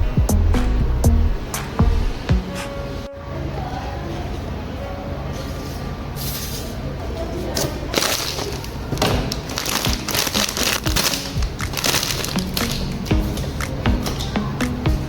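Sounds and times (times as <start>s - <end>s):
quiet background music: 0.0s - 15.0s
packaging crinkling and rustling: 7.6s - 13.1s.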